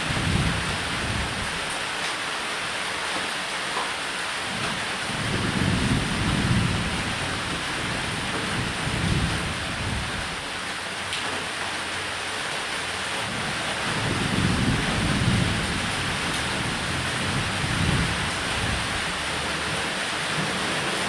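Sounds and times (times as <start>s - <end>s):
rain on a roof: 0.0s - 21.0s
thunder rolling: 5.1s - 10.4s, 13.3s - 21.0s.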